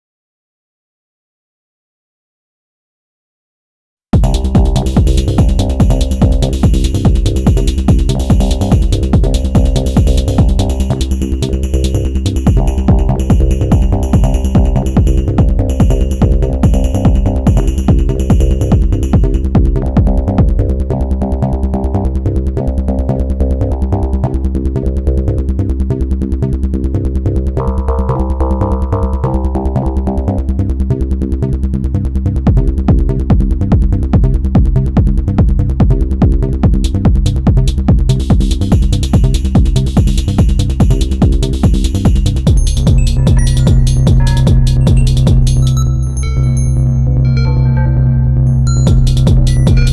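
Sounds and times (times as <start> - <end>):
hi-hat and percussion pattern: 4.2 - 20.5, 36.2 - 46.2, 48.7 - 49.9
techno kick drum: 4.2 - 20.7, 32.5 - 46.0, 48.7 - 49.9
bass and synth tones: 4.2 - 49.9
held synth chord: 42.6 - 49.9.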